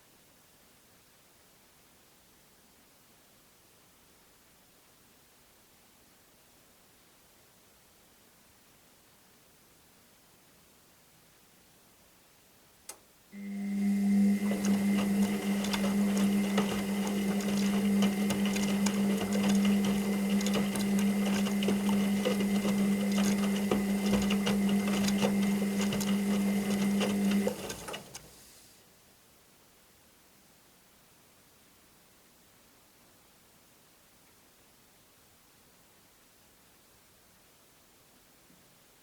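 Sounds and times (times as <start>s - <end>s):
washing machine click: 13.4s - 28.4s
washing machine motor humming: 13.4s - 28.6s.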